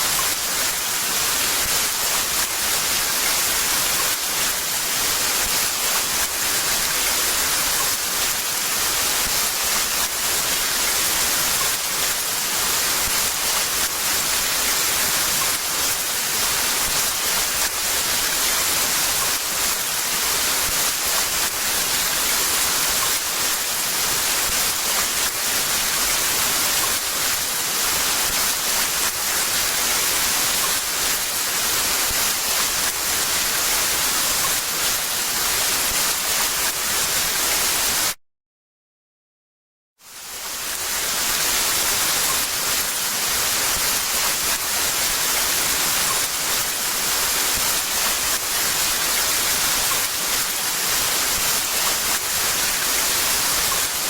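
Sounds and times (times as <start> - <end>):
heavy rain falling: 40.4 - 54.0.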